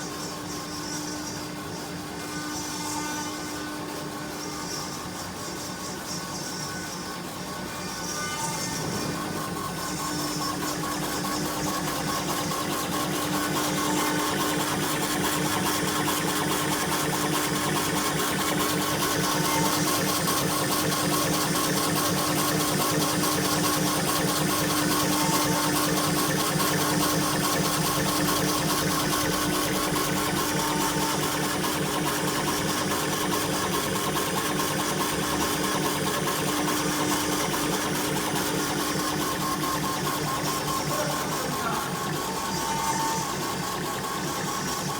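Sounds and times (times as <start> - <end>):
fast mechanical chatter: 0.0 - 44.9
machine hum: 6.5 - 44.9.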